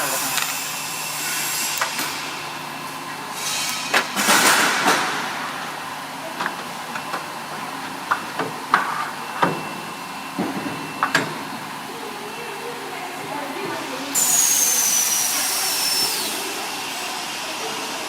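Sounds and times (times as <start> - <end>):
milling machine humming: 0.0 - 18.0
hissing cutting noise: 14.0 - 18.0.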